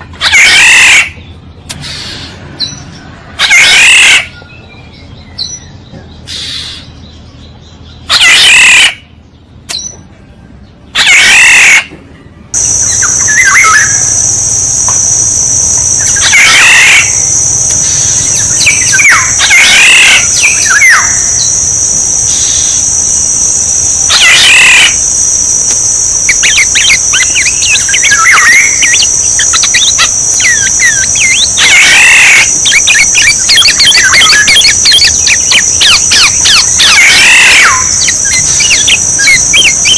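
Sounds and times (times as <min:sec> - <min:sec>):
bird calling loudly: 0:00.2 - 0:01.2, 0:03.4 - 0:04.4, 0:08.1 - 0:09.0, 0:11.0 - 0:11.9, 0:12.6 - 0:39.9
bird chirps: 0:12.6 - 0:39.9
high-pitched drone: 0:12.6 - 0:39.9.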